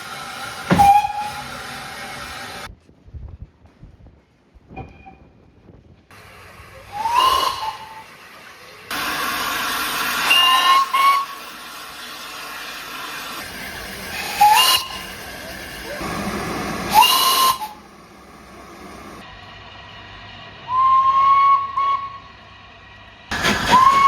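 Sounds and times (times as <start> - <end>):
steam hissing: 0.0 - 2.7, 6.2 - 19.3, 20.7 - 24.0
steam whistle blasts: 0.3 - 1.6, 6.9 - 8.1, 10.2 - 11.4, 14.2 - 15.2, 16.9 - 17.8, 20.7 - 22.2, 23.4 - 24.0.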